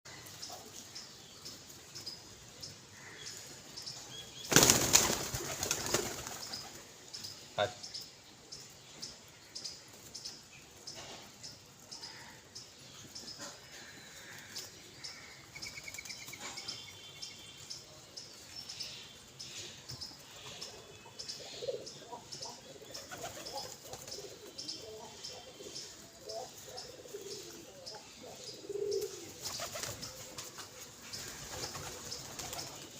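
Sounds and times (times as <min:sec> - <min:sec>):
pigeons cooing: 0:20.4 - 0:32.9.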